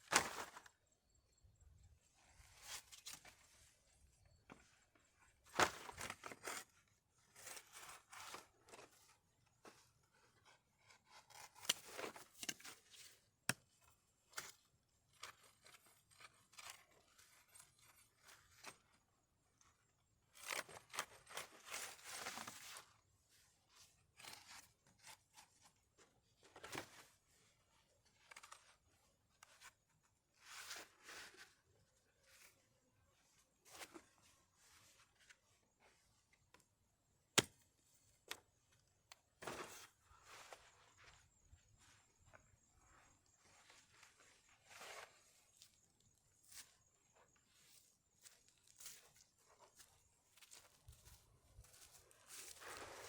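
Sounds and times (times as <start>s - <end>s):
rustling and scraping objects: 39.3s - 45.8s, 47.5s - 53.0s.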